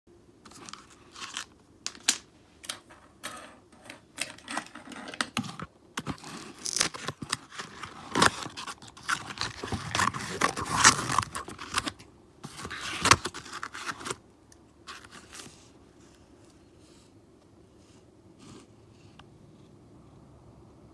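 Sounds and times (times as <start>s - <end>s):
plastic packaging crinkling: 0.5s - 2.2s, 4.4s - 14.2s.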